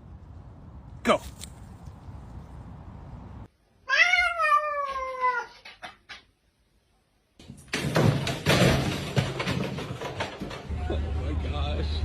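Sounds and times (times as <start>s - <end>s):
cat meowing: 3.8s - 5.6s.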